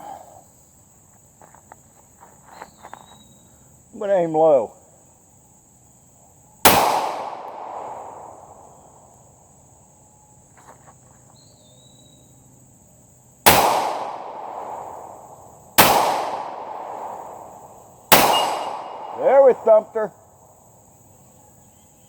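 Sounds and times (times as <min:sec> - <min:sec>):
handgun shots on steel gong: 0:15.8 - 0:17.0, 0:18.1 - 0:19.2.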